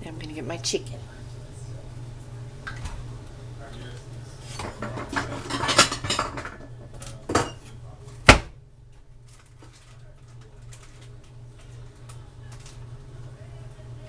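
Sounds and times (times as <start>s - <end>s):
dishes and utensils clattering: 3.8s - 7.8s.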